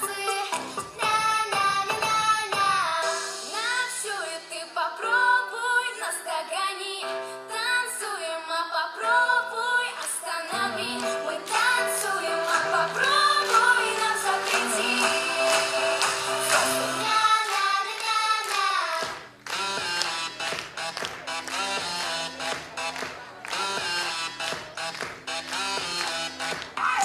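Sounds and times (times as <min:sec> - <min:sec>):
backing music: 0:00.0 - 0:04.1, 0:10.5 - 0:17.6, 0:19.1 - 0:27.0
woman singing: 0:00.0 - 0:19.0.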